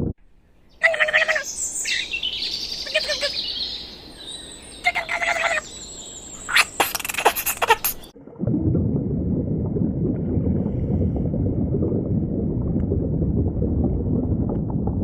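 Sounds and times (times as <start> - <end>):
bird calling rapid notes: 0.7 - 8.1
bird whistling gliding notes: 0.7 - 8.1.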